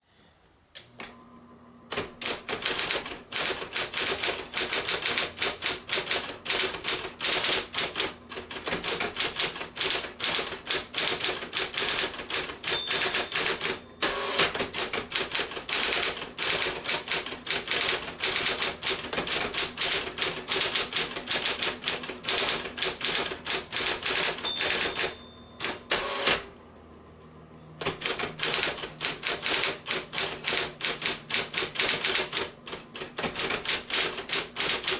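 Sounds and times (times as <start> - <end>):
typewriter motor hum: 1.8 - 26.6, 27.8 - 34.9
electric typewriter key strikes: 1.9 - 26.5, 27.8 - 34.9
typewriter bell ringing: 8.8 - 21.7, 22.3 - 26.0.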